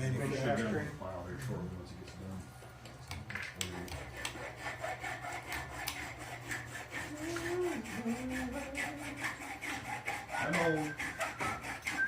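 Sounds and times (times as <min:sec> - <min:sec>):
rhythmic rasping scrapes: 0:03.6 - 0:12.0.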